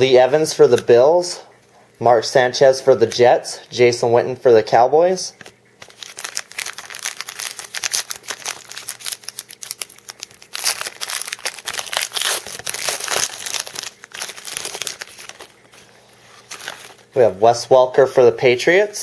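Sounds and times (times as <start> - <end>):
foil wrapper crinkling: 5.4 - 17.3.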